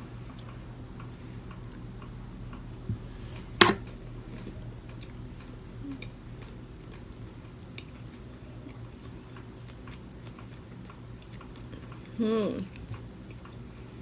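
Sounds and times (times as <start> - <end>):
soft thump: 3.6 - 3.8.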